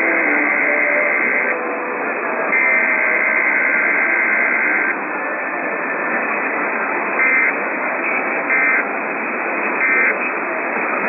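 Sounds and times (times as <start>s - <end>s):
harsh two-tone data bursts: 0.0s - 1.6s, 2.5s - 5.0s, 7.1s - 9.0s, 9.7s - 10.4s
radio hiss: 0.0s - 11.0s.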